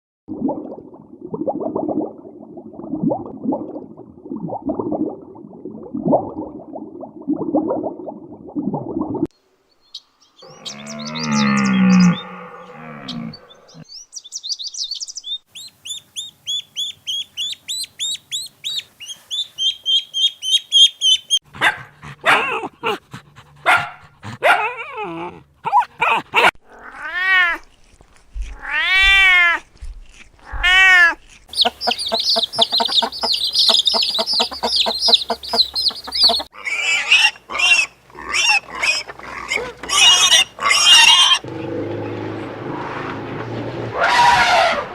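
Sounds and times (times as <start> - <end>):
drawn-out rising and falling calls: 10.0 - 21.4, 31.5 - 39.0
fast high chirping: 31.5 - 36.5.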